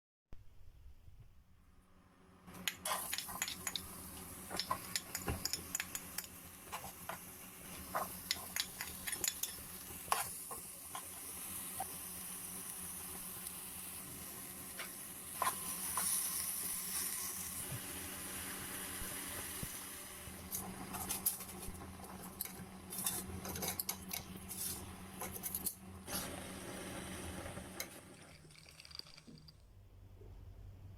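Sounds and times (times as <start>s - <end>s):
utensils clinking and scraping pans: 20.5s - 25.8s.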